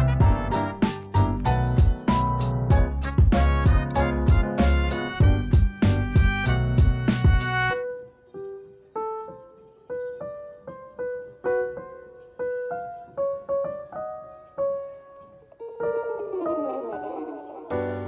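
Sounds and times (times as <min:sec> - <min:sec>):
loud music with a beat: 0:00.0 - 0:07.8
soft piano melody: 0:00.0 - 0:18.0.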